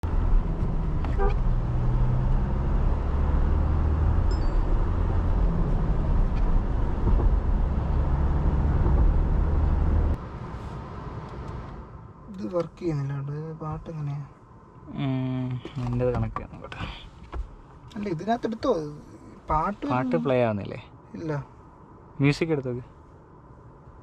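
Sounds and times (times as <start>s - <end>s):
diesel engine droning: 0.0s - 10.2s.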